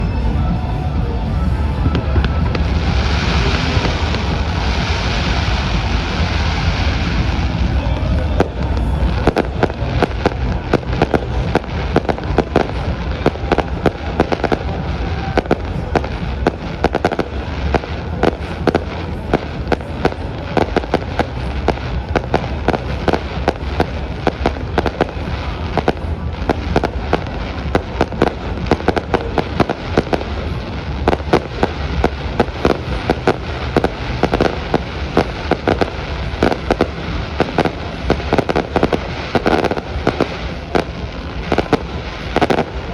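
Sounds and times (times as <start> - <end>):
fireworks popping and banging: 0.0 - 42.9
low rumble: 0.0 - 42.9.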